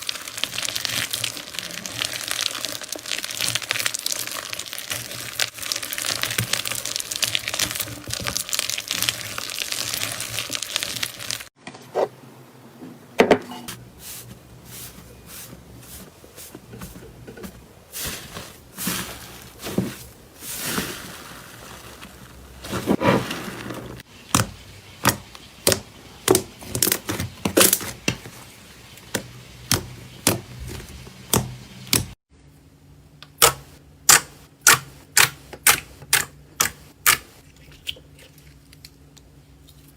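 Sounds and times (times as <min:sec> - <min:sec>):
slime crackling and popping: 0:00.0 - 0:11.5.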